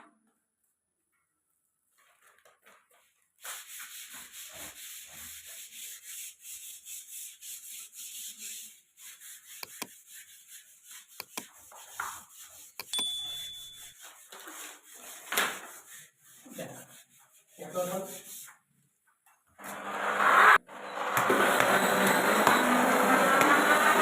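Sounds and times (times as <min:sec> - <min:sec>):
sander gritty hiss on wall: 0:03.4 - 0:12.9, 0:19.6 - 0:24.0.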